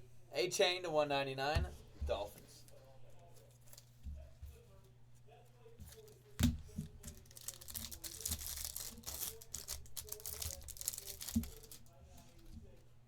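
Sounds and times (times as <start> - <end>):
foil wrapper tearing and crinkling: 7.0 - 11.9.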